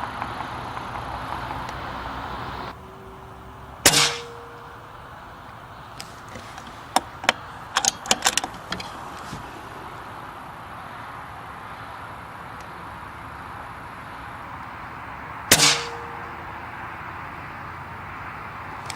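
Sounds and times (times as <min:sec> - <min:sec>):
air rifle shot: 0:03.8 - 0:04.9, 0:15.5 - 0:16.4.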